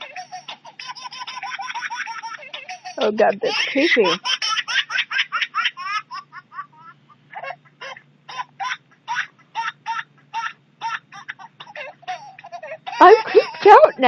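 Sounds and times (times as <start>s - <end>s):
high creepy laughing ringtone: 12.9s - 14.0s.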